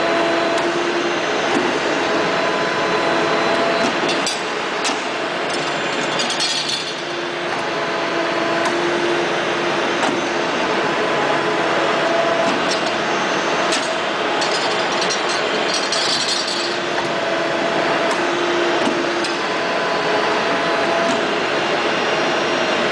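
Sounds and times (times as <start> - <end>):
hydraulic pump noise: 0.0 - 22.9.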